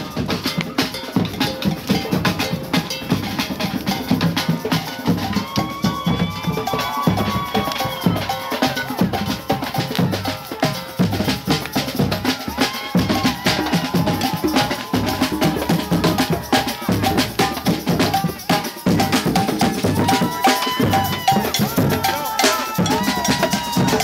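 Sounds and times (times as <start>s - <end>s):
music with steady drumbeat: 0.0s - 24.0s.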